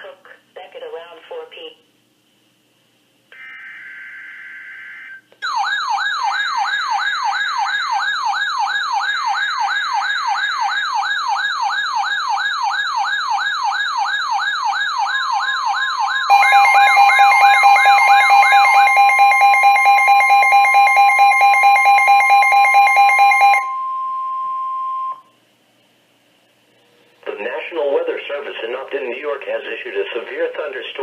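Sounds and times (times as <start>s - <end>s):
electronic siren sweeping upward: 3.4s - 25.2s
two-tone alert signal: 16.3s - 25.3s.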